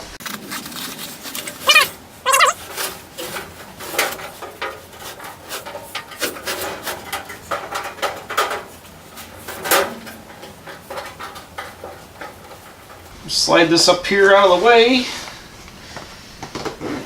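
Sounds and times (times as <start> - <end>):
tools being handled: 0.2 - 13.2
sheet metal knocks and scraping: 0.4 - 13.4.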